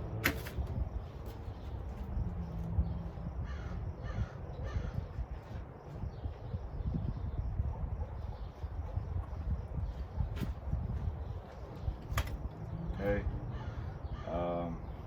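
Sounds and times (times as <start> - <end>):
low background rumble: 0.0 - 15.0
bird harsh calls: 12.8 - 15.0.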